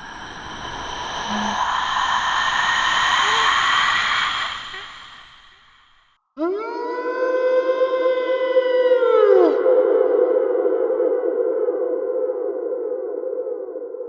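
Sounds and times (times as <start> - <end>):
cinematic swell hissing wash: 0.0 - 6.1.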